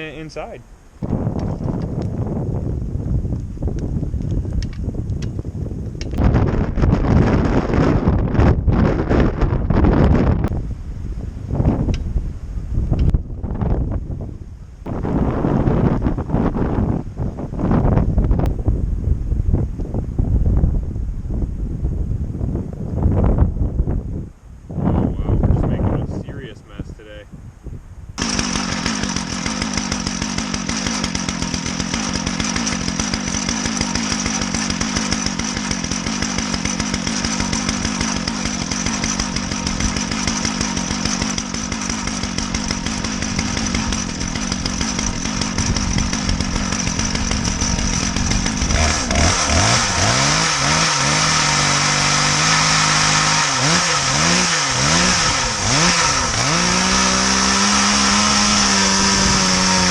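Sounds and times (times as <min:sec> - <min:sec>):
chainsaw cutting log: 0:06.0 - 0:10.6, 0:28.2 - 0:59.9.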